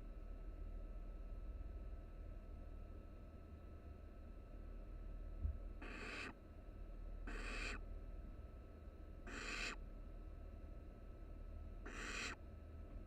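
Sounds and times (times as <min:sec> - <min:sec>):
owl nestlings hissing: 0:05.8 - 0:06.3, 0:07.3 - 0:07.8, 0:09.3 - 0:09.8, 0:11.9 - 0:12.4.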